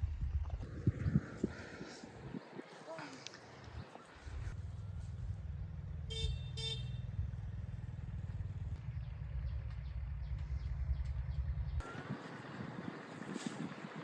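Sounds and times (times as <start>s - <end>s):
vehicle engine rumbling: 0.0s - 14.0s
horn beeps: 6.1s - 7.0s.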